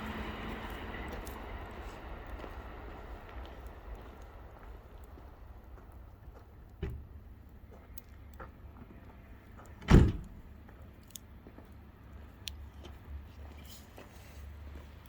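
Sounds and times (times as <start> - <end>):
wood fire crackling: 1.2 - 11.4.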